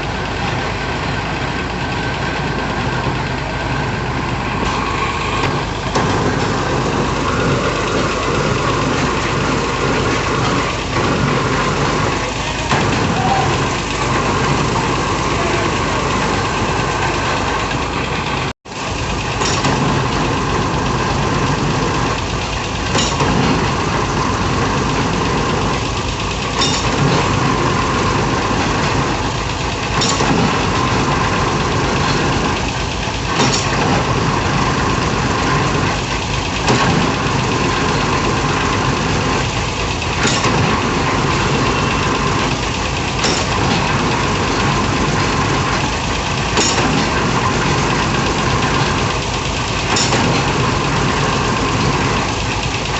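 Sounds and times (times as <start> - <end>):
diesel engine running: 0.0 - 52.9
sharp metal clank: 19.4 - 20.1, 22.9 - 23.7, 26.5 - 27.6, 30.0 - 31.0, 33.3 - 34.2, 40.2 - 42.4, 43.2 - 45.8, 46.5 - 49.2, 49.8 - 52.0.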